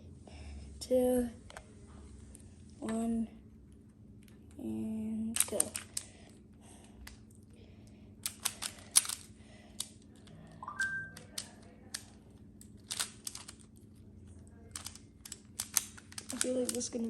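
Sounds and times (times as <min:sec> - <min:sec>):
plastic puzzle clicks: 0:05.4 - 0:06.1, 0:08.2 - 0:13.7, 0:14.7 - 0:17.0.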